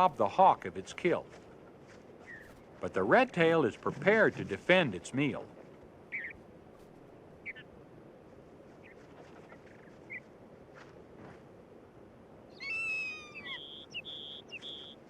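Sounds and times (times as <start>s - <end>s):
high piping bird notes: 12.5s - 15.0s.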